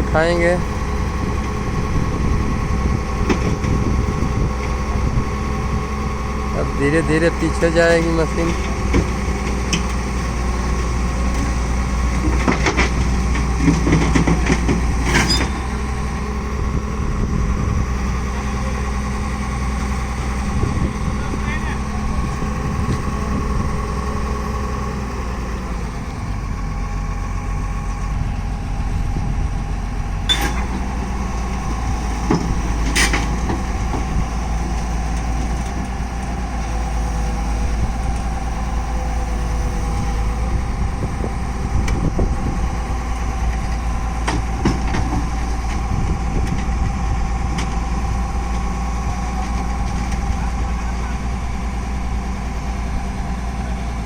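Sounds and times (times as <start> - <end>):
excavator diesel engine running: 0.0 - 54.0
sharp metal clanks: 30.3 - 30.7.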